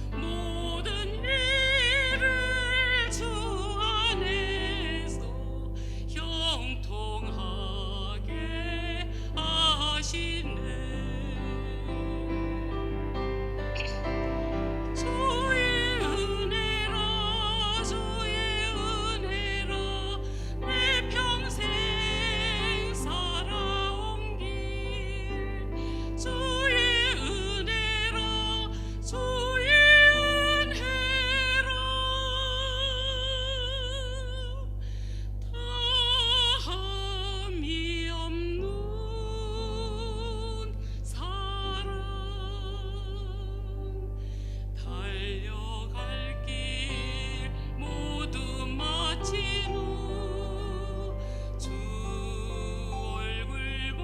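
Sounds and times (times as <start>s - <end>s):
woman singing with vibrato: 0.0s - 12.5s, 14.9s - 34.8s, 35.5s - 44.2s, 44.8s - 54.0s
instrumental accompaniment: 9.2s - 32.3s.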